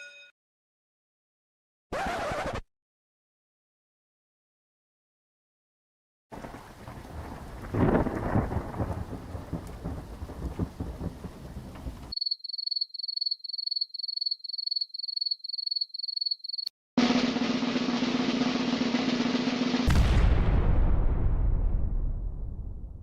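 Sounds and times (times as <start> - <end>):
steady rain: 6.3 - 12.1
thunder rumble: 6.3 - 12.1, 19.8 - 23.0.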